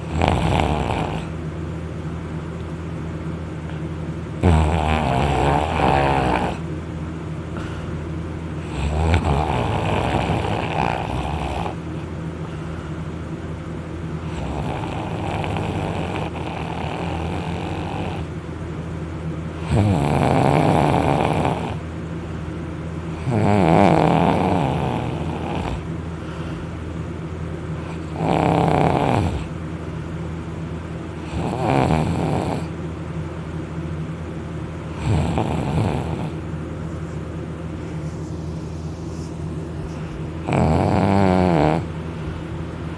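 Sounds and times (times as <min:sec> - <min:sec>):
person snoring loudly: 0:00.0 - 0:01.3, 0:04.4 - 0:06.6, 0:08.6 - 0:11.8, 0:14.2 - 0:18.3, 0:19.6 - 0:21.8, 0:23.2 - 0:25.9, 0:27.8 - 0:29.6, 0:31.2 - 0:32.7, 0:34.9 - 0:36.4, 0:40.4 - 0:42.0.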